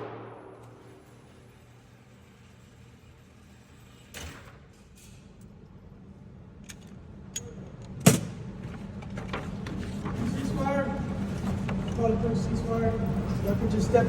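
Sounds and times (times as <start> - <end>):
pistol shots: 0.0 - 1.0.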